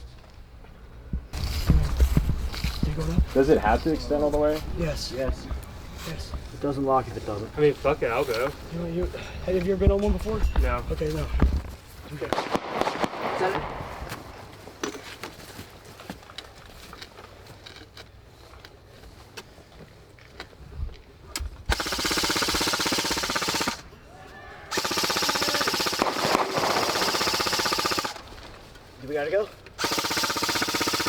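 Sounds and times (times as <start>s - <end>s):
airsoft gun automatic bursts: 21.7s - 23.9s, 24.7s - 28.5s, 29.8s - 31.0s.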